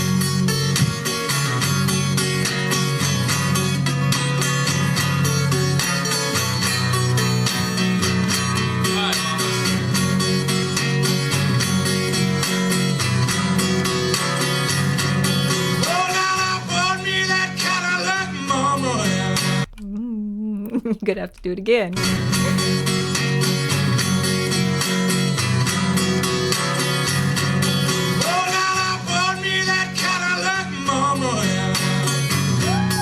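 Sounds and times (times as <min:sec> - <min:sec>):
fingerpicked acoustic guitar: 0:00.0 - 0:32.7.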